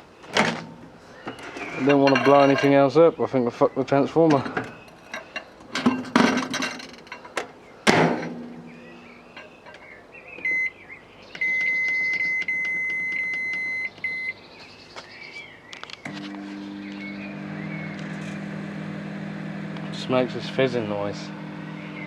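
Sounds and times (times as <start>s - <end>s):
microwave beeps: 10.4s - 10.8s, 11.4s - 14.4s
microwave oven humming: 16.1s - 22.0s.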